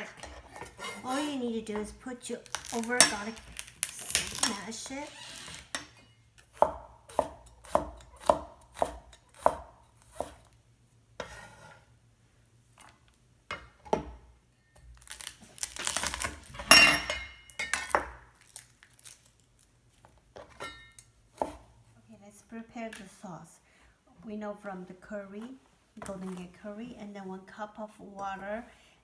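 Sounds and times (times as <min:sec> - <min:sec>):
knife chopping on cutting board: 0:06.5 - 0:10.5, 0:21.4 - 0:21.6.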